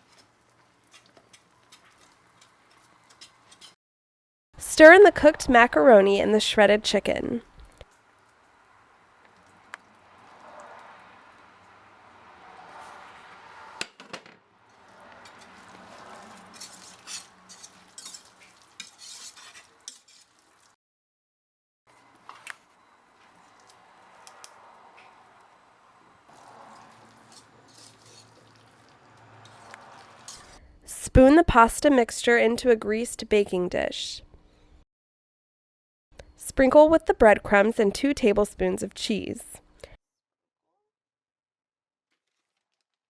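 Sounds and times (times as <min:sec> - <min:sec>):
wet stirring in a saucepan: 0:00.0 - 0:03.8, 0:07.8 - 0:13.7, 0:14.7 - 0:20.8, 0:23.1 - 0:30.6, 0:42.1 - 0:42.9.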